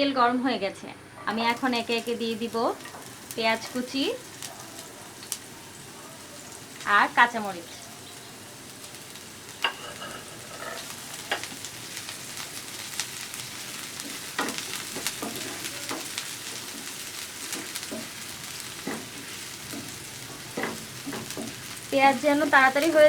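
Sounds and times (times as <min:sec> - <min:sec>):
food sizzling in oil: 0:01.3 - 0:23.0
spatula scraping a pan: 0:09.6 - 0:11.6, 0:13.0 - 0:21.9.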